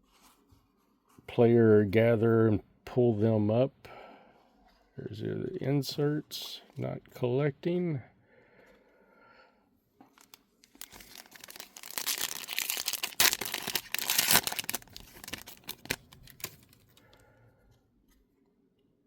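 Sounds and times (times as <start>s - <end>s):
plastic wrapper tearing and crinkling: 10.1s - 17.0s.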